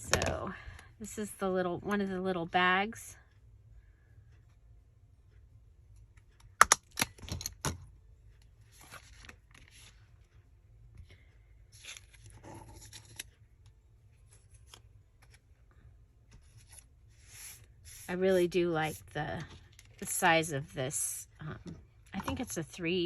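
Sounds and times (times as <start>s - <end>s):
paper rustling and crinkling: 8.7s - 10.0s.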